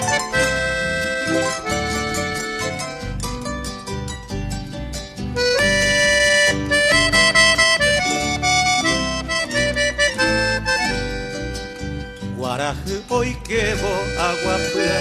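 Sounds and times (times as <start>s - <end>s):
accordion melody: 0.0s - 15.0s
bass: 0.0s - 15.0s
plucked guitar: 0.0s - 15.0s.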